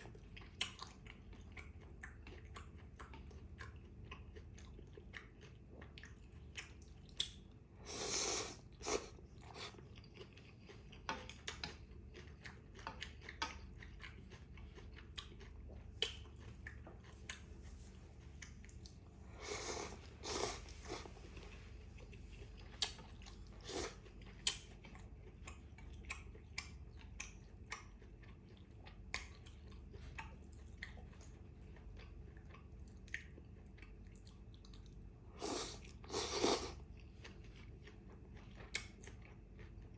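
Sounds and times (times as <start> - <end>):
chewing noodles: 0.0 - 39.9
wet mouth clicks: 6.6 - 7.4, 23.7 - 24.7.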